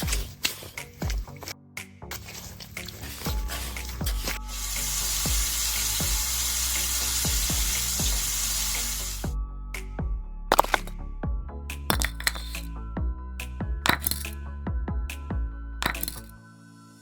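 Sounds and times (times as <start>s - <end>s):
background music with low beat: 0.0s - 16.4s
steady hiss: 3.6s - 9.3s.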